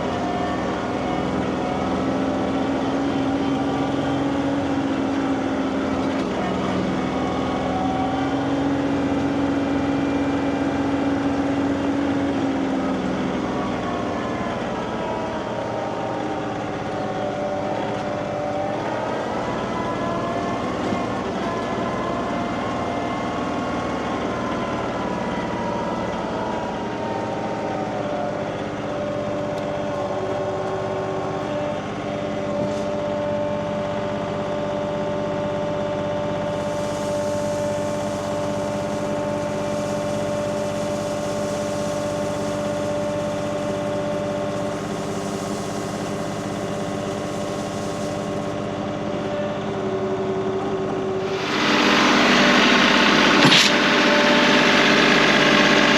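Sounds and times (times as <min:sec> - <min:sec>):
tractor engine running: 0:00.0 - 0:20.0, 0:20.6 - 0:55.9.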